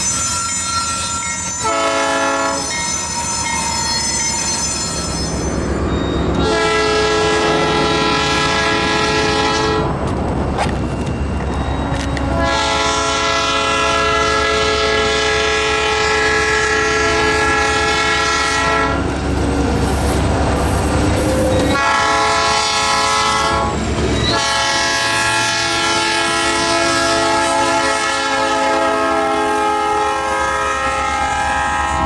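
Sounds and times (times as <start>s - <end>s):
moving train rumble: 0.0s - 32.0s
locomotive horn chord: 1.6s - 2.6s, 6.4s - 10.0s, 12.3s - 19.0s, 21.8s - 32.0s.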